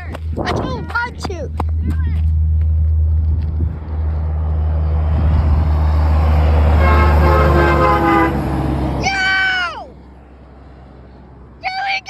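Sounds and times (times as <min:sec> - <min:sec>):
road noise: 0:00.0 - 0:12.0
truck engine rumble: 0:00.0 - 0:12.0
truck air horn blast: 0:05.3 - 0:09.0.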